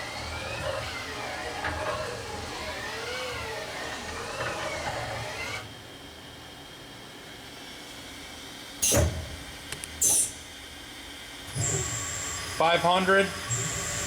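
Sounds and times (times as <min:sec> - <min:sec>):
lathe axis drives whining: 0:00.0 - 0:06.1, 0:11.5 - 0:14.0.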